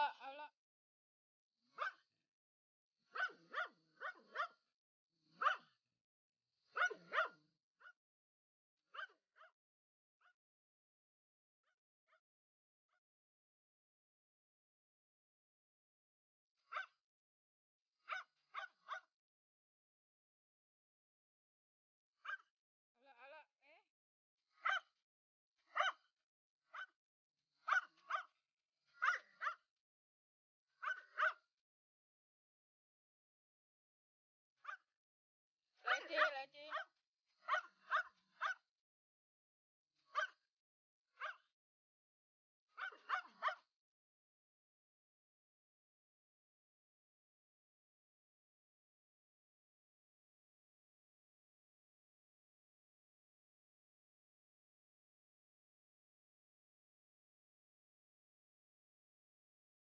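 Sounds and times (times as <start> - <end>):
dog barking: 1.7 - 2.2, 3.1 - 5.8, 6.6 - 8.0, 8.9 - 9.6, 16.6 - 17.0, 18.0 - 19.1, 22.2 - 22.6, 24.5 - 25.0, 25.7 - 26.1, 26.7 - 27.0, 27.6 - 29.7, 30.8 - 31.5, 34.6 - 34.9, 35.8 - 38.7, 40.1 - 40.5, 41.2 - 41.5, 42.7 - 43.7.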